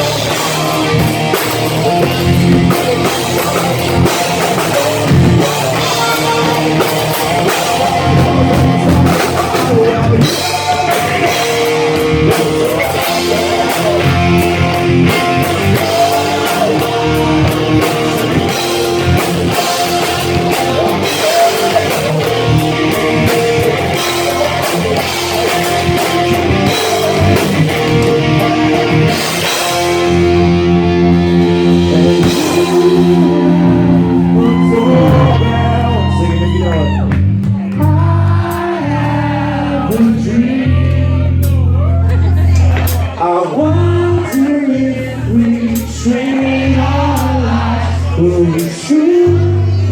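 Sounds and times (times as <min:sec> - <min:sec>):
held guitar chords ringing: 0:00.0 - 0:37.4
rock band instrumental: 0:00.0 - 0:49.9.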